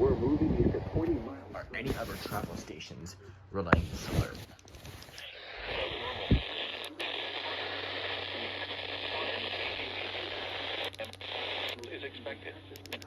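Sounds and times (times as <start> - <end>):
radio static hiss: 0.0 - 3.0, 3.7 - 13.0.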